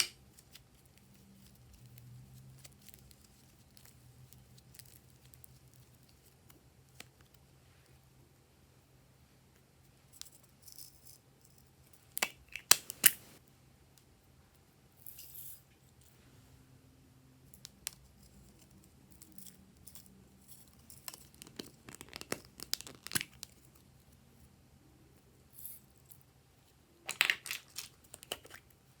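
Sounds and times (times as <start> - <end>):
slime clicking and popping: 21.3 - 23.5.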